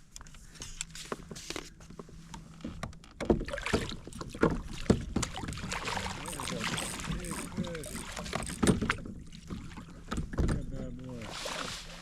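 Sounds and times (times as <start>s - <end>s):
knocks against a kayak: 2.8s - 5.7s, 7.1s - 10.8s
water splashing: 3.5s - 9.9s.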